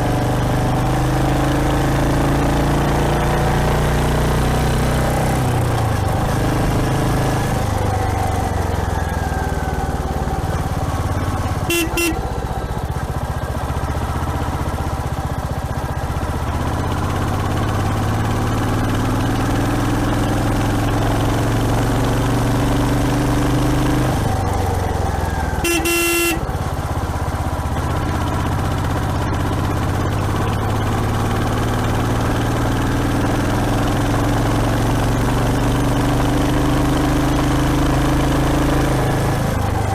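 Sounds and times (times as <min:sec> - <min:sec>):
motorcycle engine running: 0:00.0 - 0:39.9
vehicle horn beeping: 0:11.4 - 0:12.4, 0:25.6 - 0:26.7.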